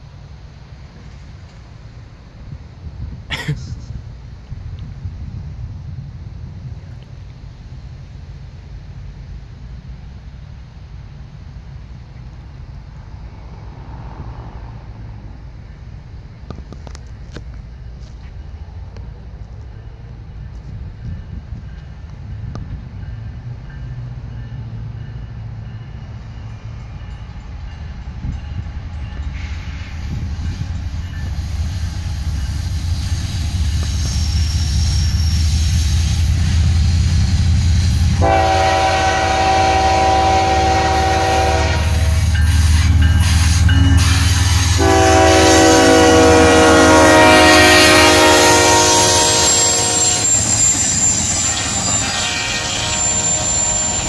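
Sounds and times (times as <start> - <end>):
diesel locomotive rumble: 0.0 - 54.0
train wheels: 0.0 - 54.0
train air horn: 32.0 - 54.0.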